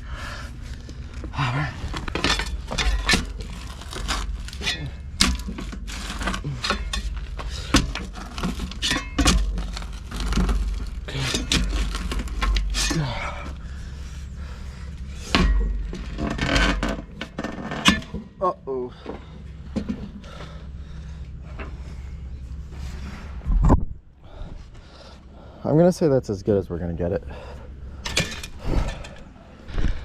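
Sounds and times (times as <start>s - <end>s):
steady low rumble: 0.0s - 30.0s
knocks cracks and scrapes: 0.7s - 13.9s, 15.0s - 18.4s, 28.0s - 30.0s.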